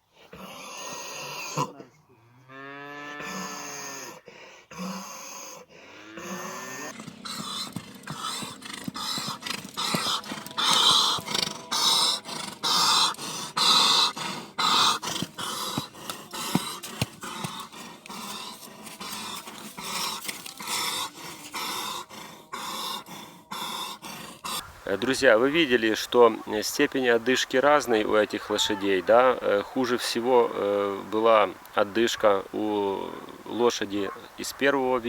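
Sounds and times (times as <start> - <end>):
horse breathing hard: 4.1 - 24.9.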